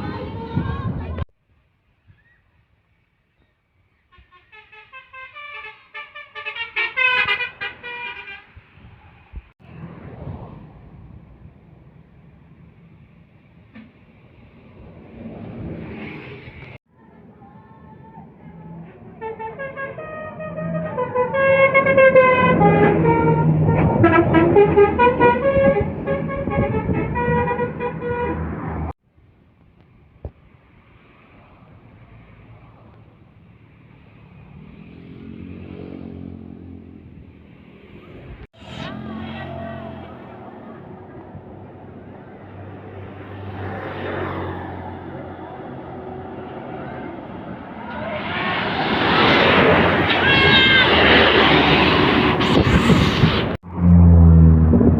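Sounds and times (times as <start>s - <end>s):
road noise: 0.0s - 1.3s, 2.2s - 54.9s
traffic noise: 0.0s - 1.3s, 2.2s - 54.9s
faint wind: 0.0s - 54.9s
bus musical horn tune: 4.1s - 8.6s, 19.2s - 28.5s, 50.1s - 51.1s
vehicle engine: 9.6s - 17.4s, 18.0s - 29.0s, 30.6s - 54.9s.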